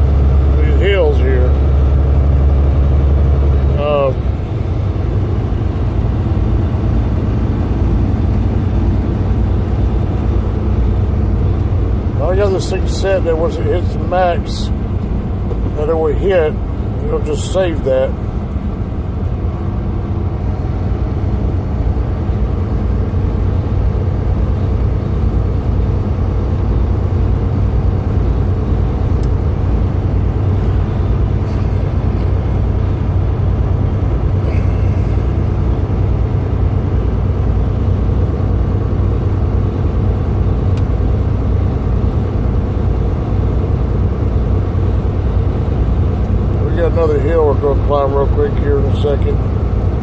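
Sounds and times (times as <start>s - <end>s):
diesel truck engine drone: 0.0s - 50.0s
road noise: 0.0s - 50.0s.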